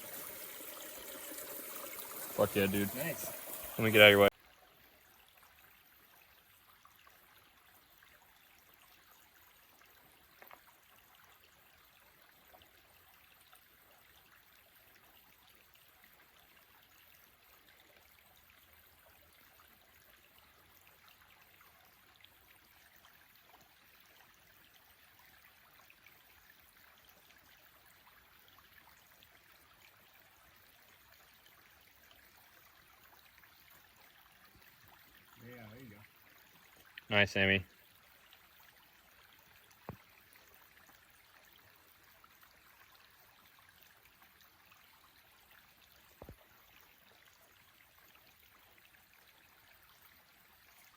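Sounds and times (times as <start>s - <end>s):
faint steady hiss: 0.0s - 4.4s, 32.4s - 47.4s.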